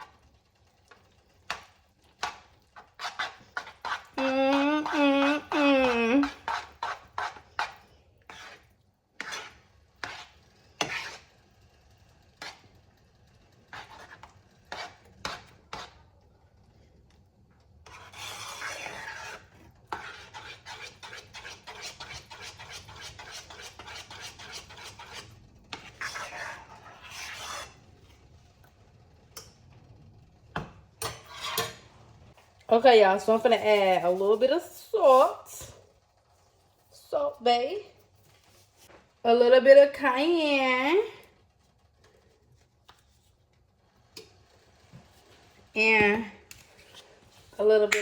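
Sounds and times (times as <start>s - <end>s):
utensil stirring thick sauce: 0.0s - 29.5s.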